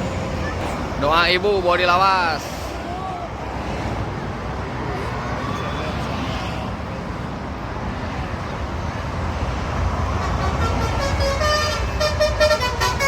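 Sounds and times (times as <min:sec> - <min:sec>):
highway traffic rumble: 0:00.0 - 0:13.0
multi-tone bus horn tune: 0:10.1 - 0:13.0.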